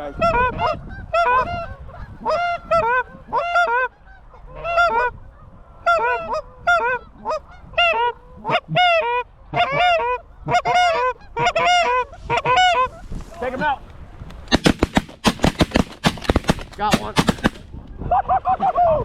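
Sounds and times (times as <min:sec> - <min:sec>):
geese honking: 0:00.1 - 0:13.6.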